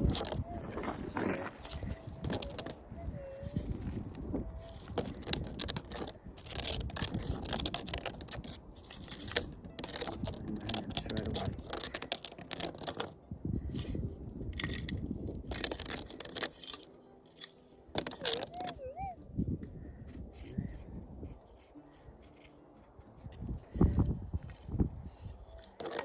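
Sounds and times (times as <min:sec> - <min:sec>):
dirt scraping and crunching: 0:00.0 - 0:18.8, 0:20.1 - 0:26.0
metal detector warbling tone: 0:18.1 - 0:19.3.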